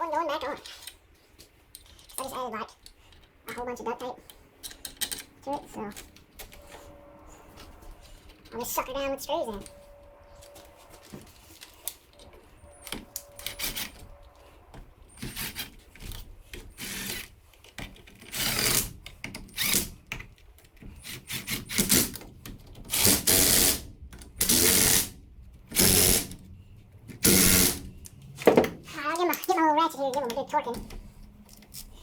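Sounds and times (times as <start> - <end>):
metal parts clicking and rattling: 0.5 - 6.6, 27.1 - 32.0
power driver driving screws: 12.8 - 14.4, 15.2 - 17.3, 18.2 - 20.2, 21.0 - 22.2, 22.9 - 25.1, 25.7 - 26.4, 27.2 - 27.9.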